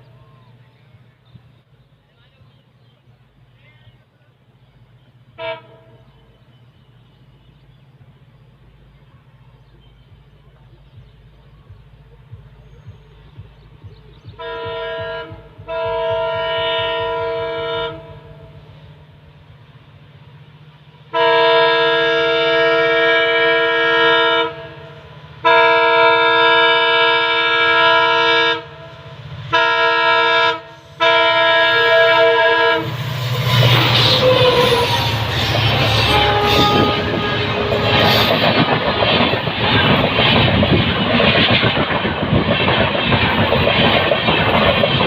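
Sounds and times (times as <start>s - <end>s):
locomotive horn blasts: 5.3s - 6.5s, 14.3s - 19.0s, 21.1s - 39.3s
low rumble: 7.2s - 20.8s.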